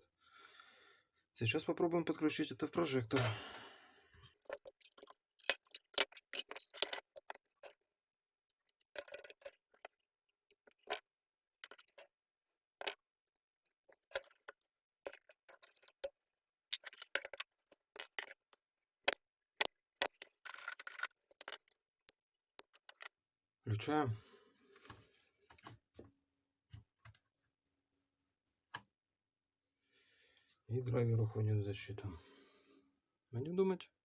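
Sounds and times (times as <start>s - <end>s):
small parts clicking and tapping: 4.3s - 7.8s, 8.5s - 12.1s, 12.8s - 23.2s.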